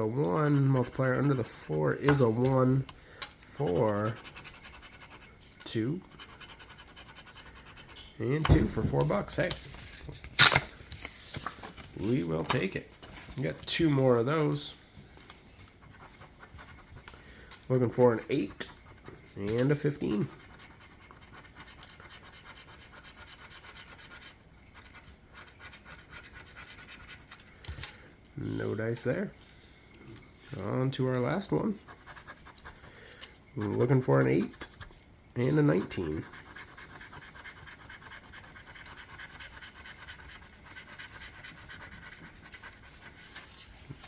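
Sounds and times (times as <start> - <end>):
scratch-off ticket being scraped: 0.0 - 2.8, 3.4 - 11.4, 17.7 - 27.4, 33.6 - 34.9, 35.6 - 44.0.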